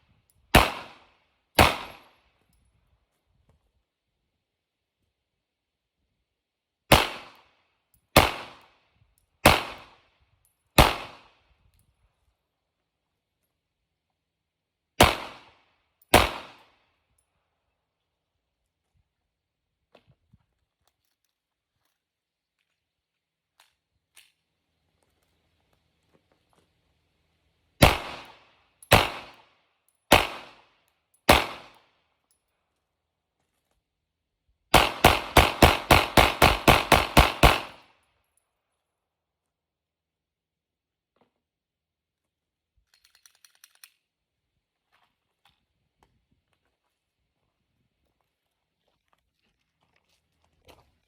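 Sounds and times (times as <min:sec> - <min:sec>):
pistol shots with echo: 0:00.5 - 0:02.0, 0:06.9 - 0:07.4, 0:08.2 - 0:08.6, 0:09.4 - 0:09.9, 0:10.8 - 0:11.3, 0:15.0 - 0:15.5, 0:16.1 - 0:16.6, 0:27.8 - 0:29.4, 0:30.1 - 0:30.6, 0:31.3 - 0:31.8, 0:34.7 - 0:37.8.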